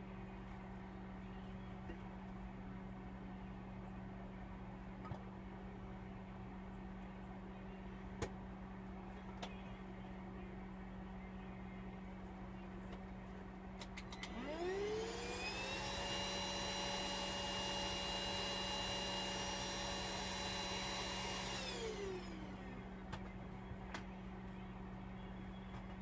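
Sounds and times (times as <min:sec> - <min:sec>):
small electric motor whining: 0:14.2 - 0:22.8.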